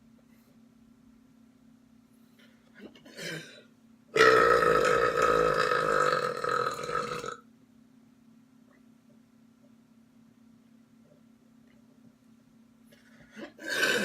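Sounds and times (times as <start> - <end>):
person belching loudly: 4.2 - 7.4, 13.4 - 14.0.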